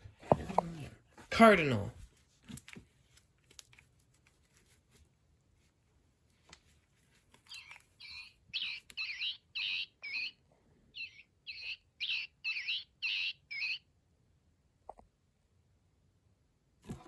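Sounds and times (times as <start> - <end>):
toy playing whistled birdsong: 7.5 - 13.8.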